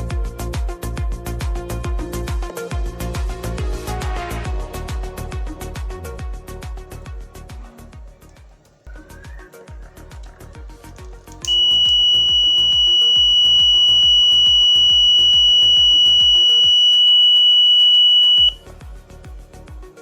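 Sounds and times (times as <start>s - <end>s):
background music with steady beat: 0.0s - 20.0s
high-pitched alarm buzzer: 11.5s - 18.6s.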